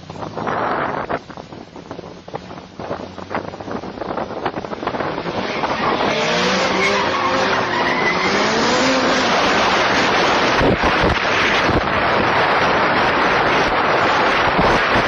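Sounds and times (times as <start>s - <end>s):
tyres skidding and squealing: 3.0s - 15.0s.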